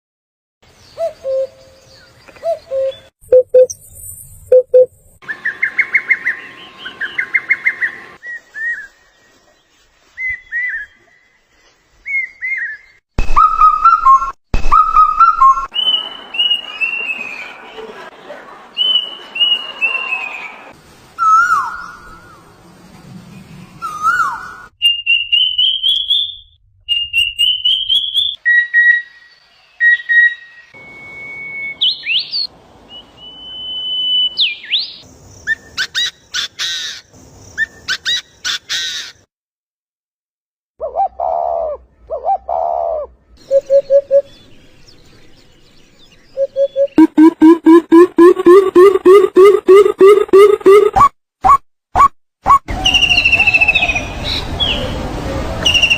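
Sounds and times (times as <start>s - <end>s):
bird calls and songs: 0.6s - 4.3s, 5.2s - 20.6s, 21.2s - 30.8s, 31.7s - 39.3s, 40.8s - 47.8s, 52.7s - 55.0s, 55.6s - 55.9s
low pulsed bird calls: 46.2s - 51.1s.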